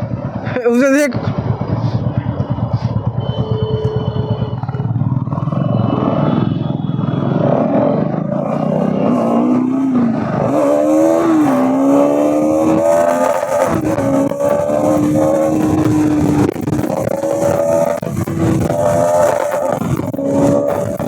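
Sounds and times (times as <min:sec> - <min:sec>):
motorcycle engine revving: 0:00.0 - 0:21.0
wind noise: 0:09.0 - 0:21.0.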